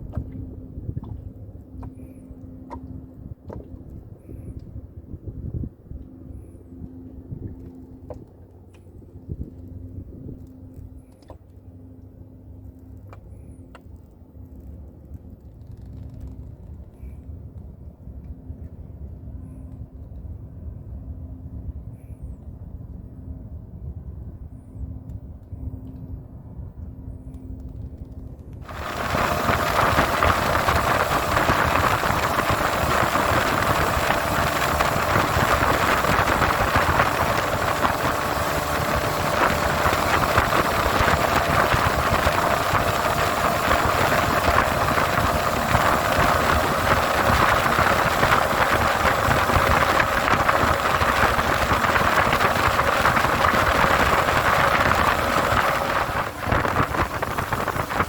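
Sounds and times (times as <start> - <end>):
outboard motor running: 0.0 - 12.0, 28.6 - 58.0
loud rushing noise: 28.6 - 58.0.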